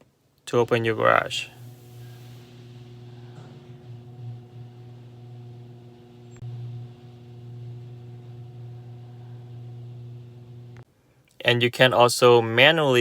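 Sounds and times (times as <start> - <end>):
garage door opener humming: 0.6 - 10.8.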